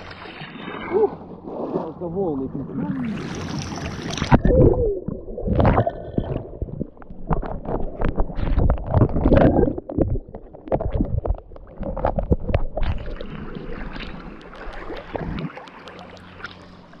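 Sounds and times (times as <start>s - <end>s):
sea waves splashing on shore: 0.0s - 4.4s
wind rumbling on microphone: 0.9s - 15.6s.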